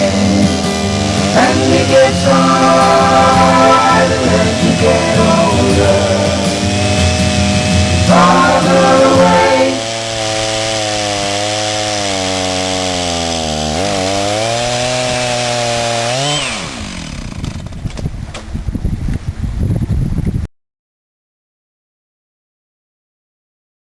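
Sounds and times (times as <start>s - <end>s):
chainsaw cutting a log: 0.0s - 18.1s.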